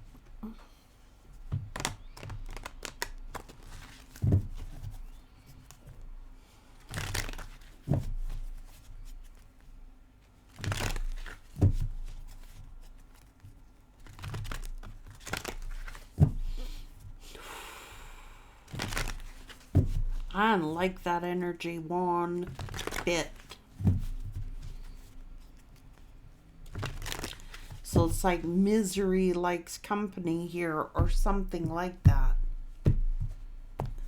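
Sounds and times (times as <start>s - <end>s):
cards rustling: 1.7s - 4.2s, 6.9s - 7.8s, 10.5s - 16.8s, 18.7s - 20.3s, 22.4s - 28.4s.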